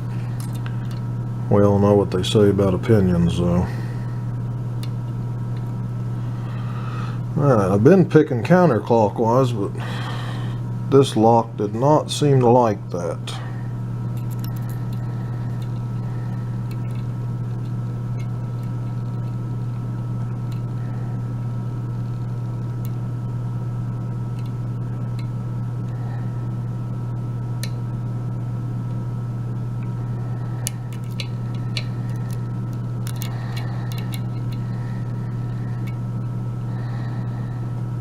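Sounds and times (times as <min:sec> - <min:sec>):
steady low hum: 0:00.0 - 0:38.0
lock pick ticking: 0:30.6 - 0:34.6.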